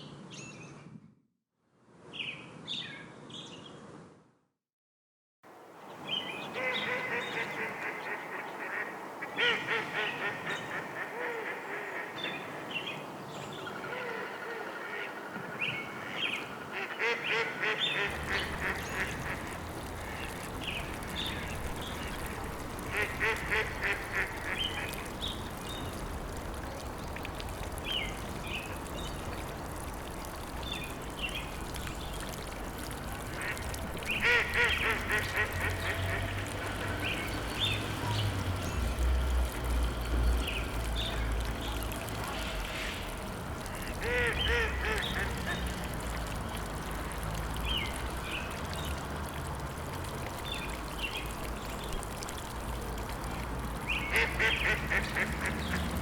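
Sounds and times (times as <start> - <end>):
ducks quacking: 16.7 - 20.4, 21.8 - 25.1, 33.3 - 37.2, 43.7 - 45.8, 54.1 - 56.0.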